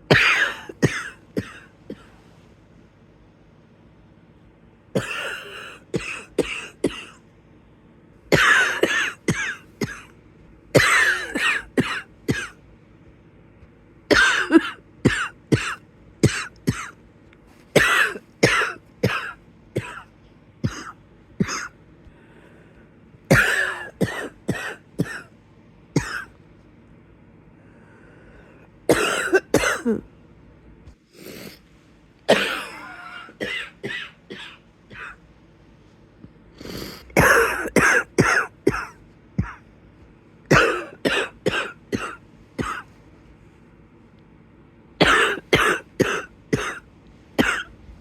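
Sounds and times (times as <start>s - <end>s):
person coughing wheezily: 0.0s - 2.2s, 5.0s - 7.2s, 8.3s - 12.6s, 14.1s - 17.0s, 17.7s - 21.8s, 23.3s - 25.3s, 26.0s - 26.4s, 28.9s - 30.1s, 32.3s - 35.2s, 36.6s - 39.7s, 40.5s - 43.0s, 45.0s - 47.8s.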